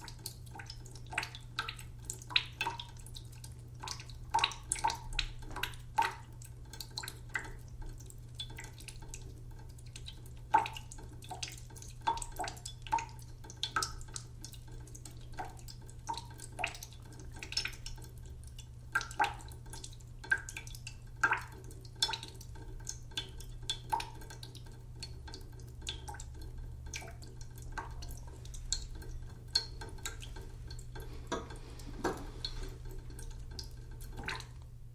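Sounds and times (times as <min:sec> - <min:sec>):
steady low hum: 0:00.0 - 0:34.9
water drops plinking into sink: 0:09.9 - 0:34.6.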